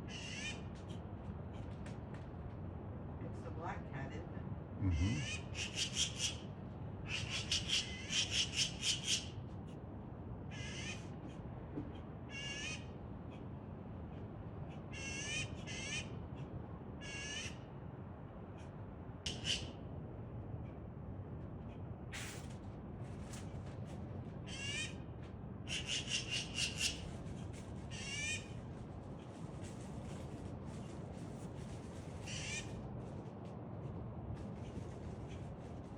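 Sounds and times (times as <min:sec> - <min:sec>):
magpie chattering: 0:05.2 - 0:06.4, 0:07.1 - 0:09.3, 0:19.3 - 0:19.7, 0:25.7 - 0:27.1, 0:27.9 - 0:28.5, 0:32.3 - 0:32.7.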